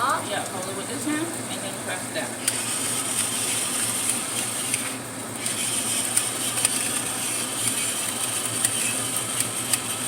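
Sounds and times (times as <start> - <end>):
electric pepper grinder grinding: 2.2 - 10.0.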